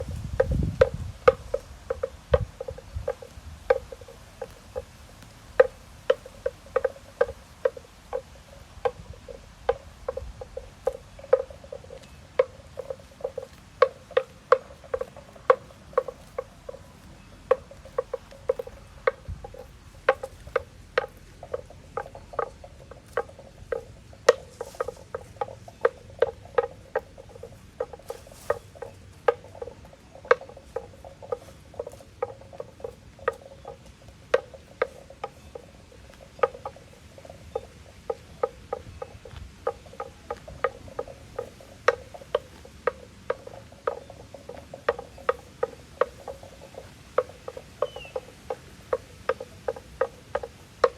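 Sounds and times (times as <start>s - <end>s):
cow tearing grass: 9.7s - 33.8s.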